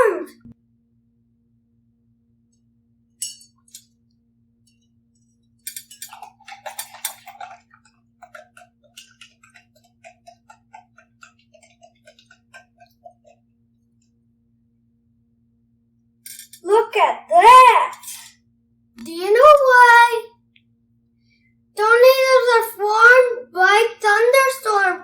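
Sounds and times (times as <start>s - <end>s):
glass jar clinking: 3.2s - 3.8s, 5.7s - 13.3s
water swirling in a jar: 5.7s - 13.9s.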